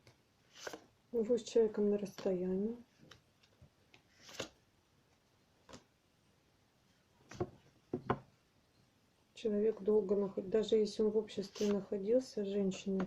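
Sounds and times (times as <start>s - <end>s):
cards clicking and rustling: 0.5s - 0.9s, 3.0s - 4.6s.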